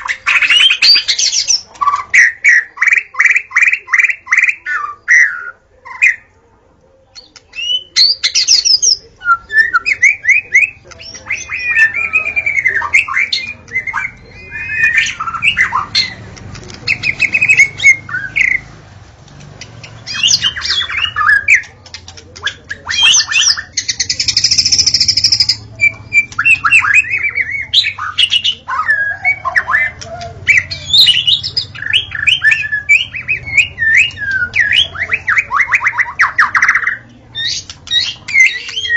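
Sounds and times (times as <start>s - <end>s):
songbird singing whistled phrases: 7.2s - 16.2s, 16.9s - 18.6s, 19.6s - 21.7s, 22.4s - 38.9s.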